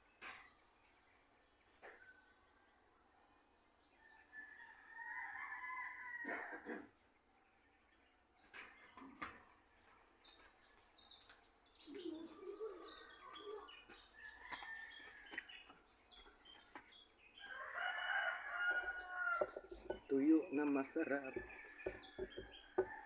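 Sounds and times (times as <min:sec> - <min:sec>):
faint bird chirps: 0:07.4 - 0:17.7.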